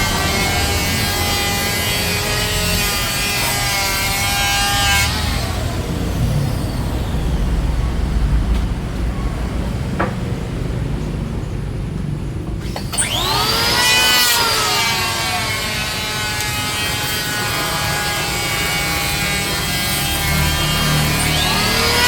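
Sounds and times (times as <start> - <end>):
power tool cutting wood: 0.0 - 7.4, 12.6 - 22.0.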